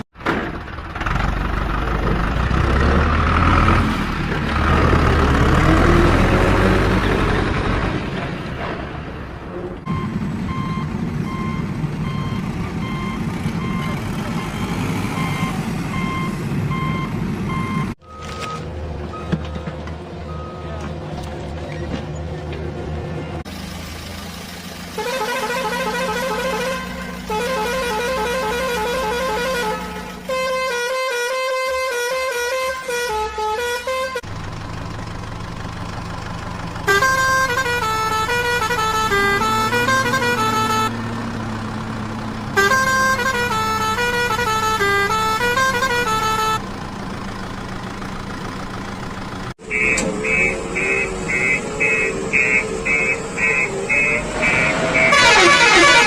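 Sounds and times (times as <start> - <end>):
toy horn-like tunes: 42.6 - 46.6, 49.7 - 56.0.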